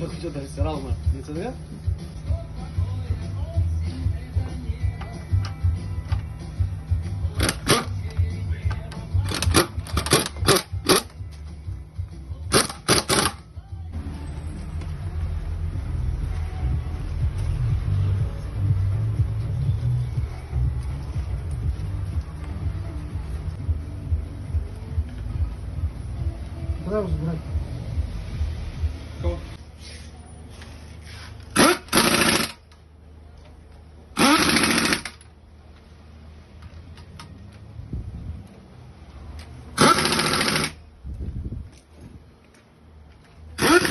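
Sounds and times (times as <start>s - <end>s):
music: 0.0s - 29.6s
impact wrench rattling bursts: 7.3s - 8.0s, 9.2s - 11.2s, 12.5s - 13.4s, 31.0s - 32.7s, 34.1s - 35.3s, 39.7s - 40.8s, 43.6s - 43.9s.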